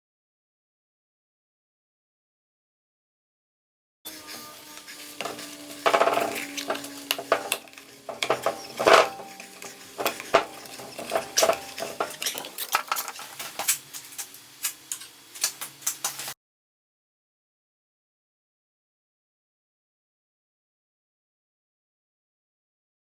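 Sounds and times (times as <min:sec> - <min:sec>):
steel parts clinking: 0:05.2 - 0:13.7.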